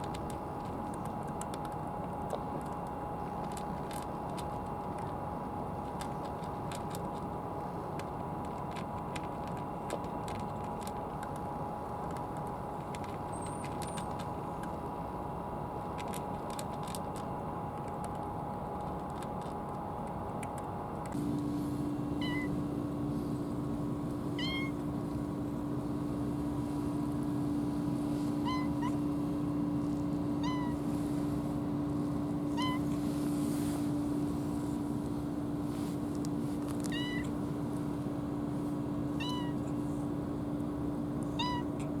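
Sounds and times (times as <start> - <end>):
low machinery hum: 0.0 - 42.0
cat meowing: 22.2 - 22.5, 24.4 - 24.8, 28.4 - 29.0, 30.4 - 30.8, 32.5 - 32.9, 36.9 - 37.3, 39.2 - 39.6, 41.4 - 41.8.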